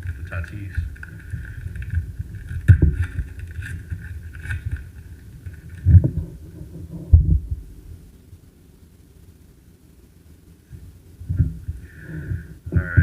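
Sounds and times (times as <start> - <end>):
handling card packs: 0.0 - 5.9
dull low bumps: 0.0 - 8.2, 10.8 - 13.0.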